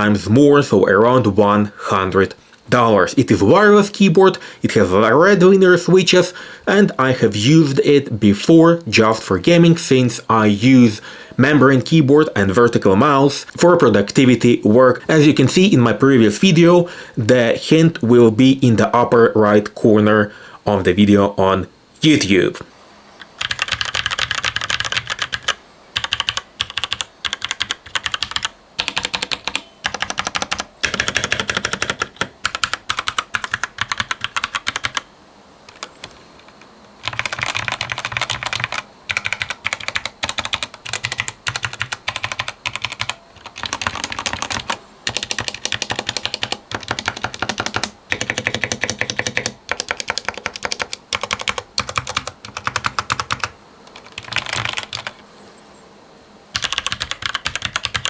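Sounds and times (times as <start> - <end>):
mechanical keyboard typing: 23.4 - 35.0, 35.7 - 55.2, 56.6 - 58.0.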